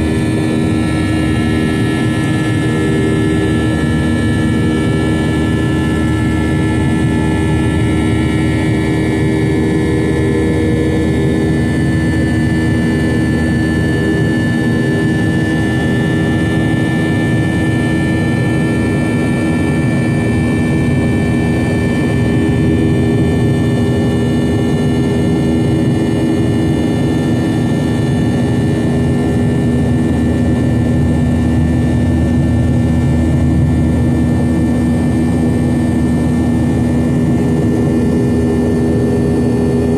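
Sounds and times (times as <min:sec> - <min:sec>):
jet engines running in cabin: 0:00.0 - 0:39.9.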